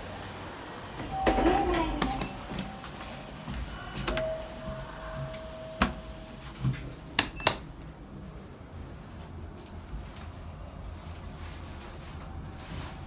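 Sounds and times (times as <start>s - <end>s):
elevator beep tone: 0.9s - 7.8s.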